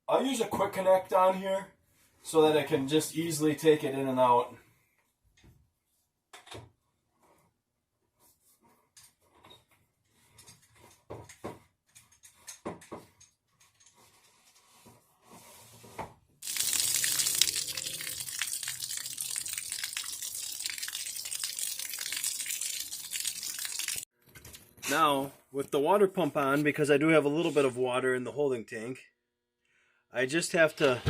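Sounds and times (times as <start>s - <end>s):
water running with loud hiss: 16.4s - 24.0s.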